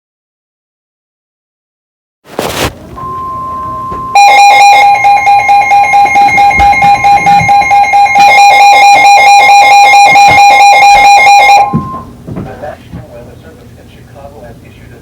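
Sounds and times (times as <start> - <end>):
pulsing alarm warble: 3.0 - 12.1
steady high tone: 3.0 - 12.1.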